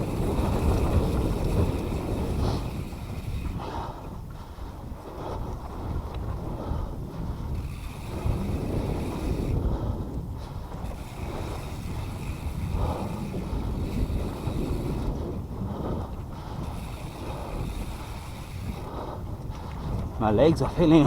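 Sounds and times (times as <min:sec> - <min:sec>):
bike tyres rolling on dirt: 0:00.0 - 0:21.0
wind on camera microphone: 0:00.0 - 0:21.0
heavy breathing: 0:02.3 - 0:08.2, 0:09.3 - 0:20.1.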